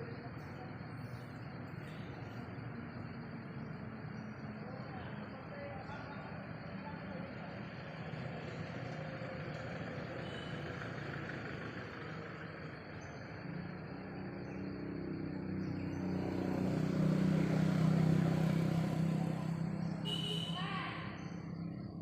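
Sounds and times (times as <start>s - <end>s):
outdoor background noise: 0.0s - 22.0s
motor vehicle passing: 7.4s - 22.0s.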